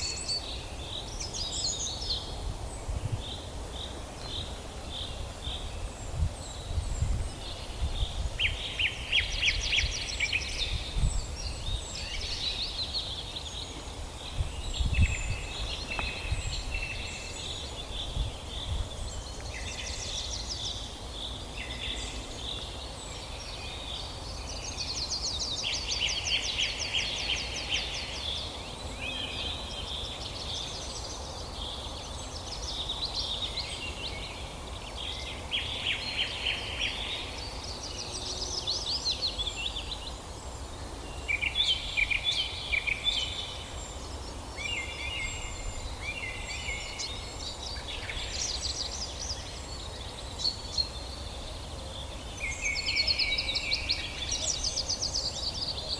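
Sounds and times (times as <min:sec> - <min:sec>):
songbirds singing and chirping: 0:00.0 - 0:55.9.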